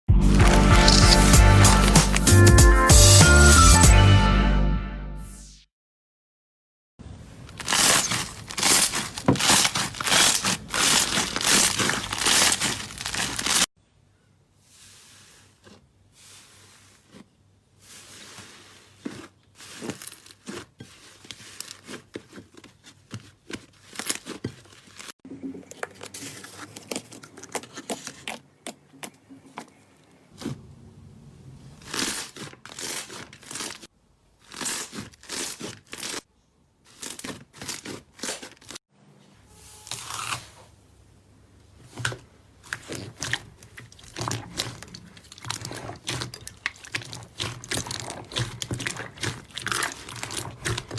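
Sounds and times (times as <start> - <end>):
slime crackling and squelching: 0.2 - 2.4, 7.3 - 13.7, 14.8 - 29.2, 31.7 - 36.3, 36.9 - 38.8, 41.8 - 50.9.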